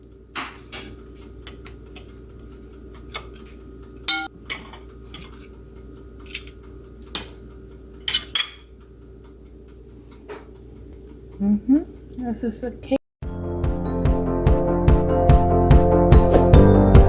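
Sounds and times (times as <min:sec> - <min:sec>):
dishes and utensils clattering: 0:00.4 - 0:05.6, 0:06.2 - 0:08.8
ringing clink of dishes: 0:04.1 - 0:04.7.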